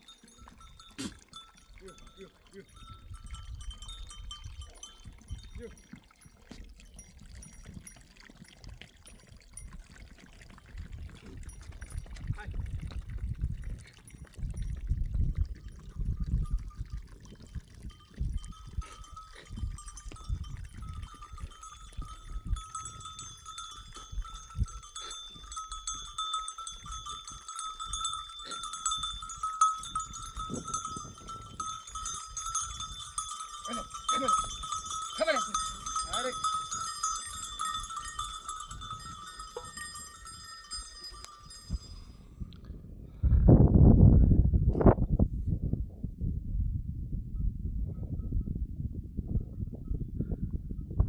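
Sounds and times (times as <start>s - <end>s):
animal bells clinking: 0.0s - 42.4s.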